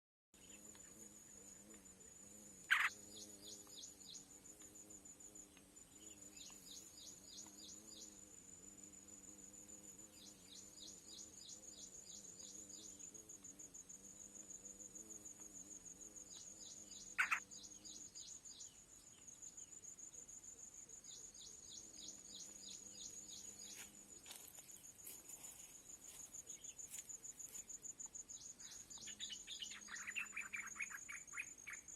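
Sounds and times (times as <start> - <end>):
high insect trill: 0.4 - 31.9
rapid high bird chirps: 2.7 - 4.2, 16.4 - 18.7, 28.4 - 31.9.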